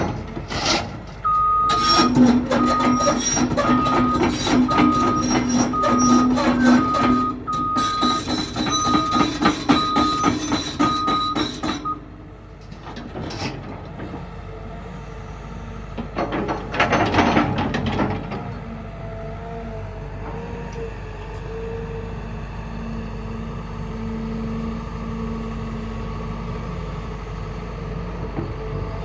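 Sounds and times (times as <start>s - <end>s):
diesel engine running: 0.0s - 29.0s
travel alarm beeps: 1.3s - 3.2s, 3.8s - 12.0s
steel tracks clanking: 1.7s - 12.1s.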